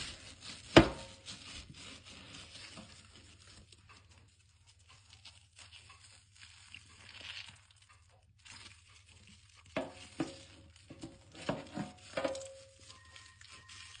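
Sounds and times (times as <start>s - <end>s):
soft rustling scrape: 0.0s - 7.4s.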